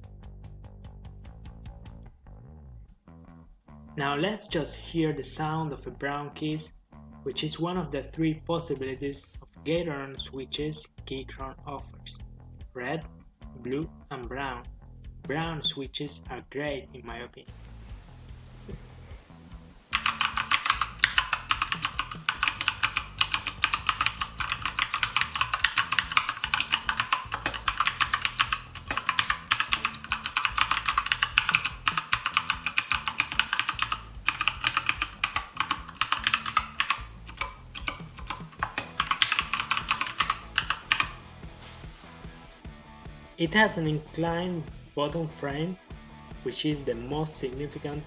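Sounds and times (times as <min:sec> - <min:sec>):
mechanical keyboard typing: 0:19.9 - 0:41.2.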